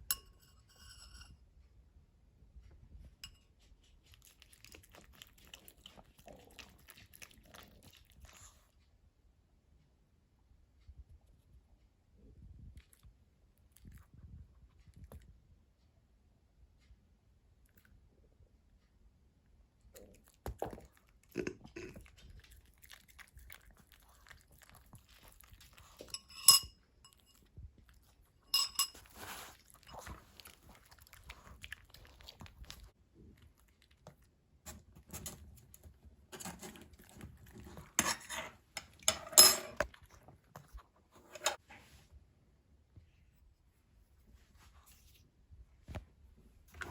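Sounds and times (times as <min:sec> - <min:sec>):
utensils clinking against dishes: 0:25.9 - 0:26.7, 0:28.5 - 0:30.0, 0:38.0 - 0:39.9.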